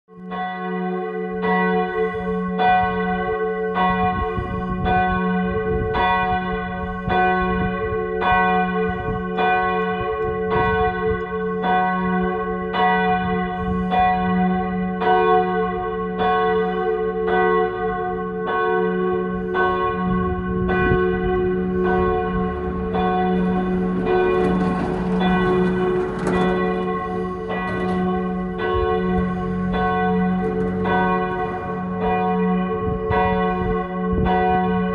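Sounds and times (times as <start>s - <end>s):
church bells ringing: 0.1s - 34.9s.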